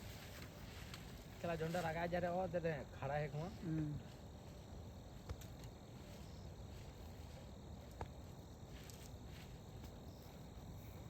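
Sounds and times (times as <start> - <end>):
low outdoor hiss: 0.0 - 11.0.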